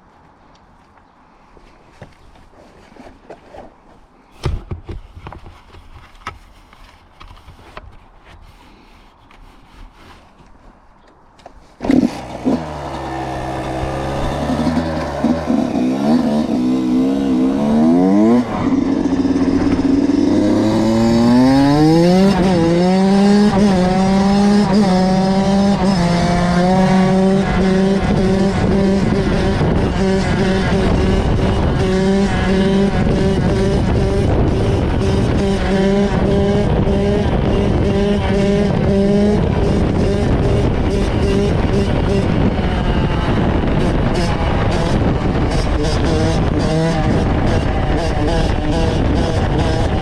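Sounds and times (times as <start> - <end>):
dirt bike engine revving: 11.8 - 50.0.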